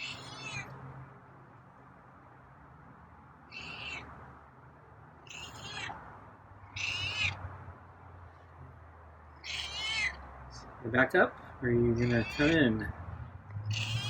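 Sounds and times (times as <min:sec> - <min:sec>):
cat meowing: 0:00.0 - 0:00.7, 0:03.5 - 0:04.1, 0:05.3 - 0:05.9, 0:06.6 - 0:07.4, 0:09.3 - 0:10.2, 0:12.0 - 0:12.6, 0:13.7 - 0:14.0.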